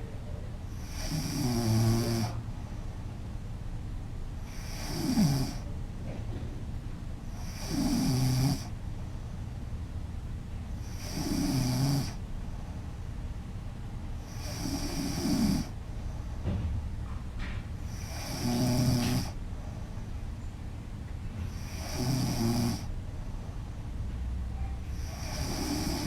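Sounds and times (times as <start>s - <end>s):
woman snoring loudly: 0.8s - 2.4s, 4.5s - 5.6s, 7.4s - 8.7s, 10.9s - 12.2s, 14.3s - 15.7s, 17.9s - 19.4s, 21.6s - 22.9s, 25.0s - 26.0s
quiet breathing: 17.8s - 20.4s, 24.5s - 26.0s.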